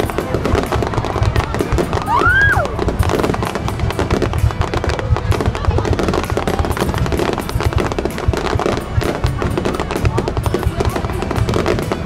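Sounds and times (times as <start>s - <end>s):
fireworks bangs and crackles: 0.0s - 12.0s
firework whistle: 0.7s - 4.4s.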